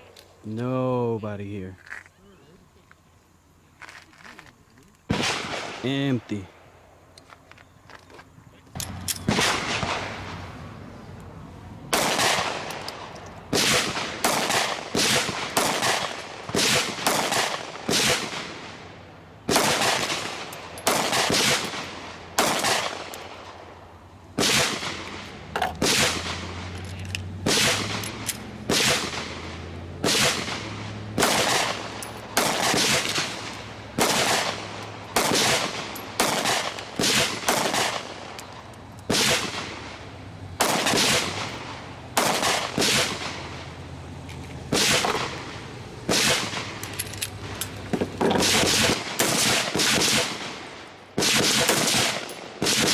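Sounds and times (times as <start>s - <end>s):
gunshots with echo: 9.2s - 10.4s, 11.9s - 18.8s, 19.5s - 23.5s, 24.4s - 25.2s, 25.8s - 26.7s, 27.4s - 38.3s, 39.1s - 40.0s, 40.6s - 43.5s, 44.7s - 46.8s, 48.3s - 52.9s.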